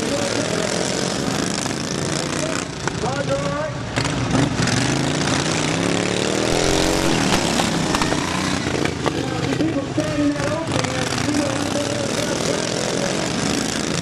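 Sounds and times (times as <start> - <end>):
lawn mower engines racing: 3.7 - 14.0.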